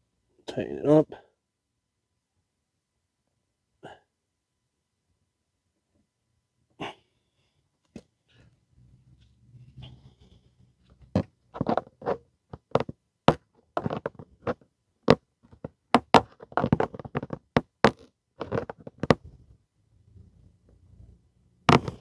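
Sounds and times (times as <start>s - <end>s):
hand tools knocking and scraping: 11.2s - 19.2s.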